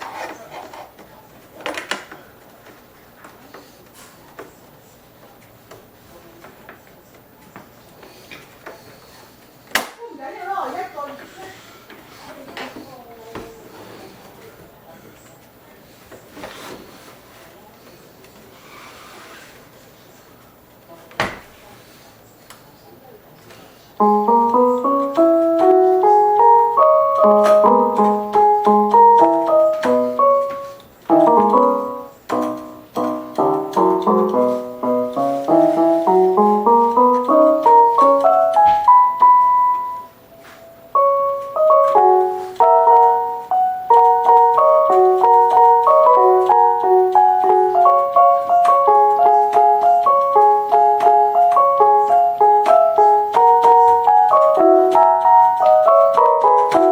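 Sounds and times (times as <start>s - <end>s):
electronic keyboard playing tune: 24.0s - 56.9s.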